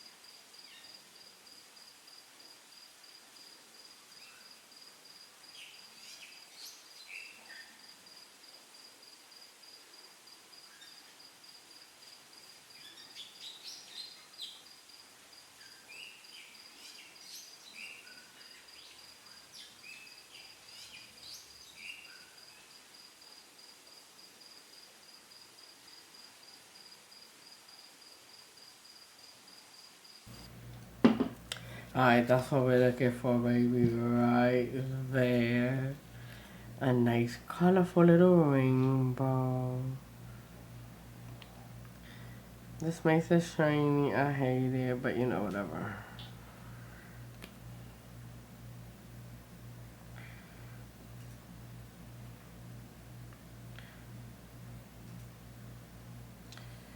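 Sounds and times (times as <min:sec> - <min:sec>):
cricket chirping: 0:00.0 - 0:30.2.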